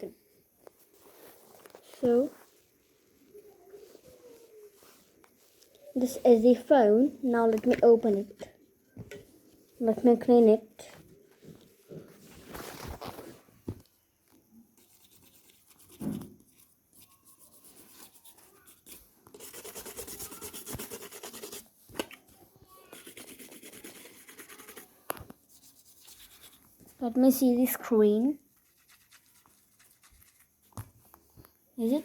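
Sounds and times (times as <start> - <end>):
brush scrubbing: 14.8 - 21.7, 22.9 - 26.8, 28.6 - 30.6.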